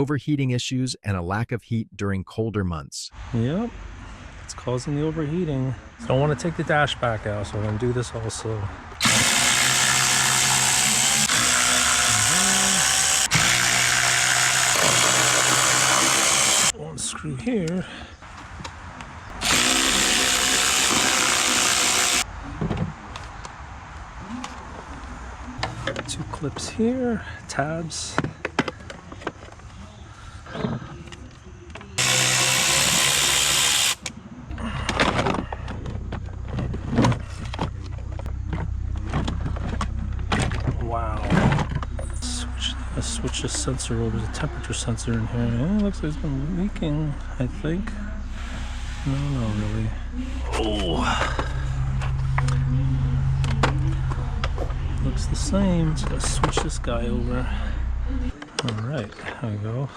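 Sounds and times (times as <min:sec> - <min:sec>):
cordless drill running: 0:09.0 - 0:16.7, 0:19.3 - 0:22.3, 0:32.0 - 0:34.0
power tool hissing: 0:09.0 - 0:16.7, 0:19.3 - 0:22.3, 0:32.0 - 0:34.0, 0:48.3 - 0:49.9
low steady hum: 0:33.8 - 0:59.9.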